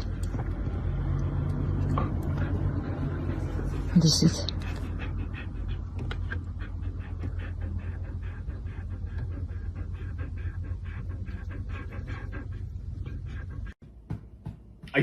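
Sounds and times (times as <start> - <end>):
steady low hum: 0.0 - 15.0
dog panting rapidly: 0.3 - 13.8.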